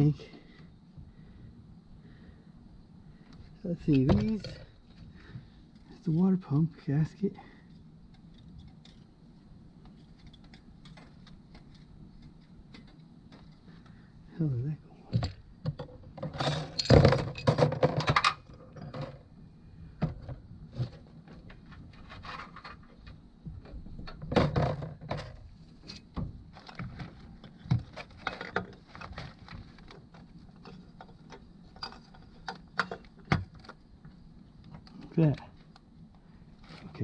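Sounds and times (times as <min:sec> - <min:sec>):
metal parts clinking and scraping: 0:16.2 - 0:19.2.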